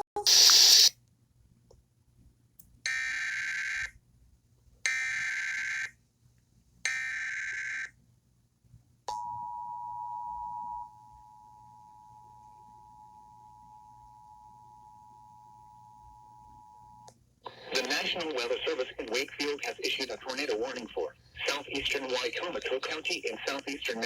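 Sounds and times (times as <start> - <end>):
screeching digital header bursts: 0.2 - 0.9.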